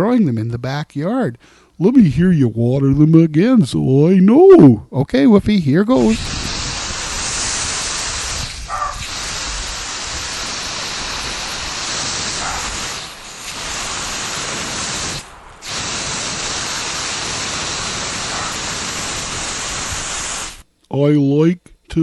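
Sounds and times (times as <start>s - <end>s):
garden hose spraying water: 5.9s - 20.6s.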